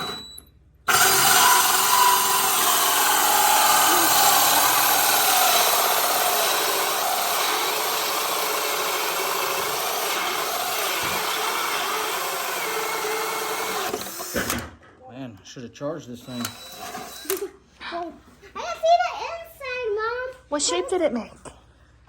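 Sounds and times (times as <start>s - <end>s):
cordless drill boring into wood: 0.0s - 0.2s, 0.9s - 14.7s, 16.2s - 17.5s.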